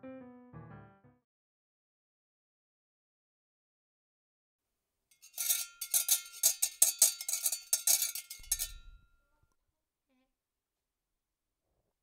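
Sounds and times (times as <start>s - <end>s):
rapid metallic clinking: 5.2s - 9.1s.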